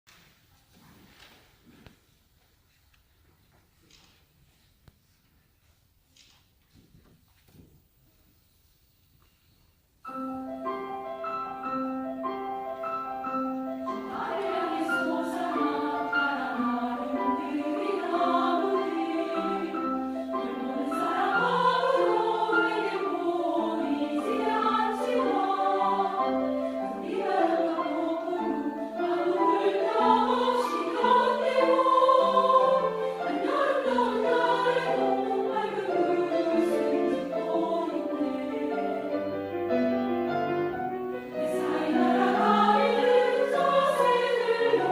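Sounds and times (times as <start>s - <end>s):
piano playing: 10.0s - 44.9s
women's choir singing: 10.9s - 39.8s, 41.2s - 44.9s.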